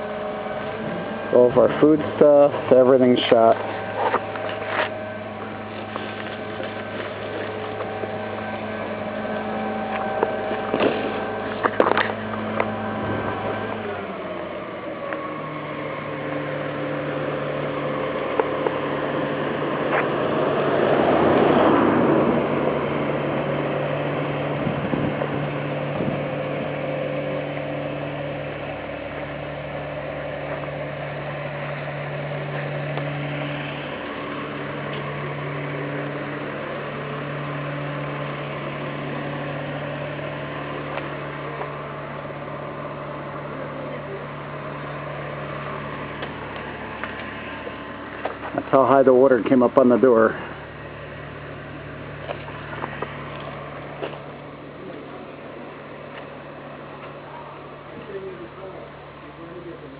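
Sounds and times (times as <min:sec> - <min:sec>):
engine humming: 0:00.0 - 0:59.9
loud rushing noise: 0:18.8 - 0:26.5.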